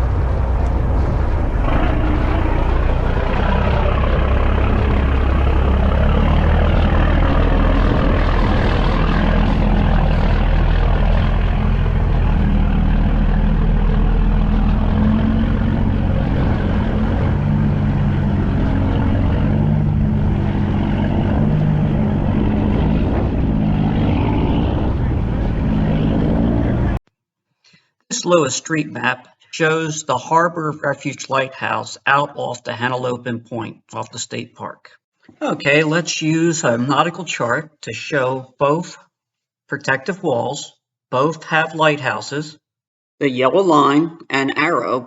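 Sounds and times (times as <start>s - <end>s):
wind and water rushing: 0.0s - 26.9s
boat engine droning: 0.0s - 27.0s.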